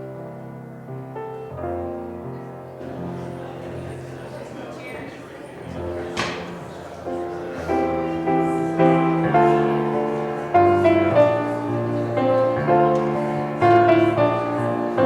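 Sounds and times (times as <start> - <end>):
keyboard instrument playing chords: 7.8 - 15.0.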